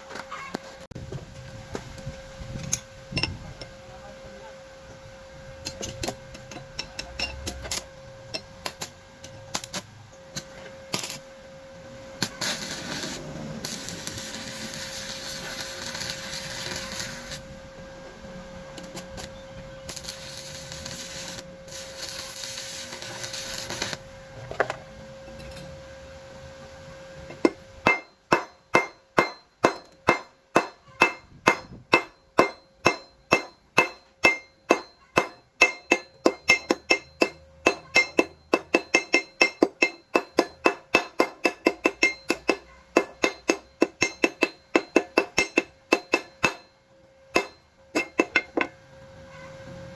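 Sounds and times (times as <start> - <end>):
hissing machine noise: 0.0 - 49.9
hammer striking steel bar: 27.4 - 46.7, 47.3 - 48.7.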